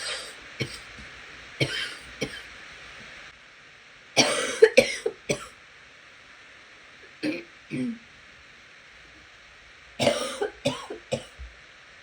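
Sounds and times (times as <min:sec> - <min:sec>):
person coughing: 0:01.6 - 0:02.4, 0:04.2 - 0:05.5, 0:07.2 - 0:08.0, 0:10.0 - 0:11.4.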